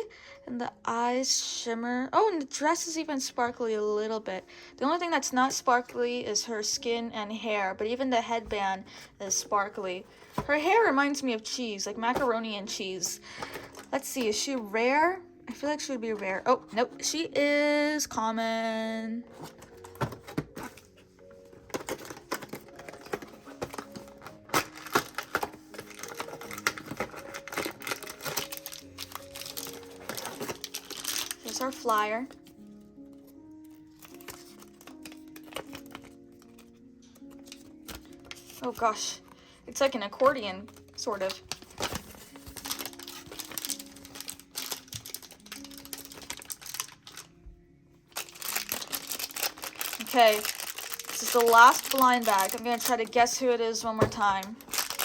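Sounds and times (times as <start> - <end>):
soft background music: 0.0 - 55.0
plastic and paper packaging rustling: 8.4 - 12.5, 13.1 - 14.7, 19.2 - 47.3, 48.1 - 55.0.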